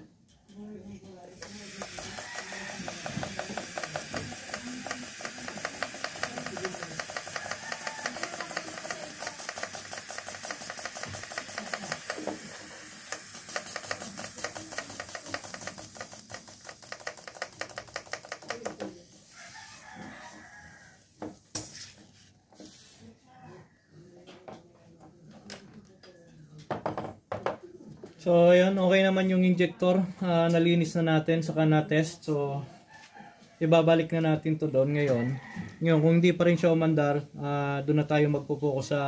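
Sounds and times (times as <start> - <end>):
fuel injector clicking: 1.4 - 18.8
fuel spraying with a hiss: 1.4 - 20.4.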